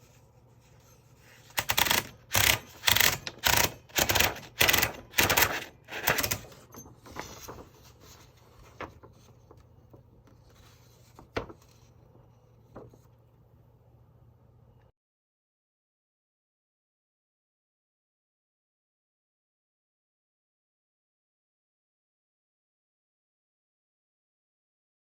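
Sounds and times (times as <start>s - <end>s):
typewriter mechanism clicks: 1.5s - 7.5s
typewriter key strikes: 1.6s - 6.9s.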